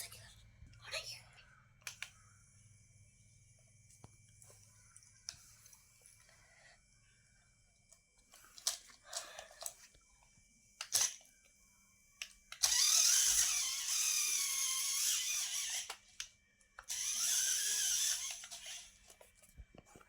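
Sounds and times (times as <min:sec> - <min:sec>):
sharp clicks: 0:01.8 - 0:02.2
small electric motor whining: 0:10.9 - 0:11.2, 0:12.5 - 0:19.2.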